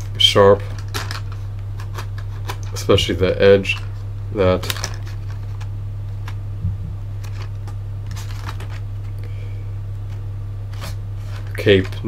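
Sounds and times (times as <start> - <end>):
steady low hum: 0.0 - 12.0
plastic packaging clicks and rustles: 7.2 - 8.9.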